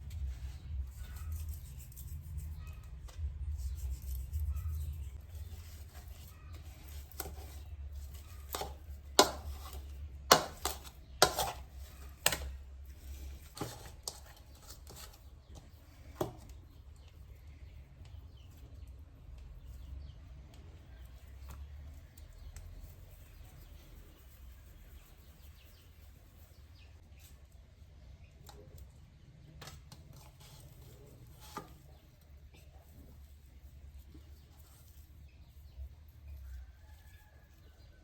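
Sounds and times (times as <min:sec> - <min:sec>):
objects knocking and tapping: 0:08.4 - 0:12.6.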